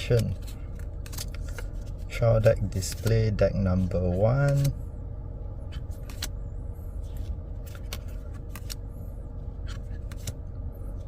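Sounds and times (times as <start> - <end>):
cards and packaging clicking: 0.0 - 3.3, 4.4 - 4.8, 5.7 - 6.3, 7.1 - 8.8, 9.6 - 10.4
low car cabin hum: 0.0 - 11.0.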